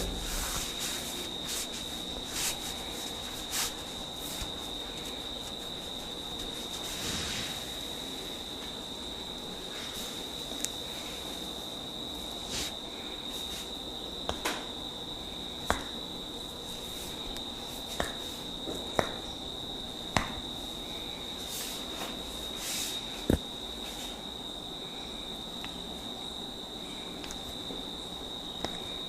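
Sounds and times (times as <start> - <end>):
steady high-pitched tone: 0.0 - 1.3.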